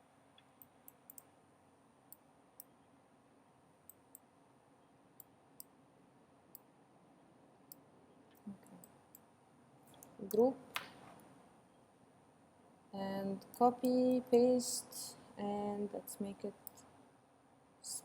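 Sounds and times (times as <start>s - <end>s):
computer mouse clicks: 0.4s - 1.3s.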